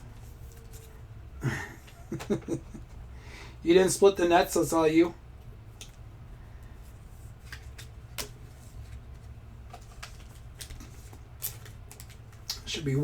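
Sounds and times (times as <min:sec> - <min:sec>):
steady low hum: 0:00.0 - 0:13.0
cards clicking and snapping: 0:09.7 - 0:12.7.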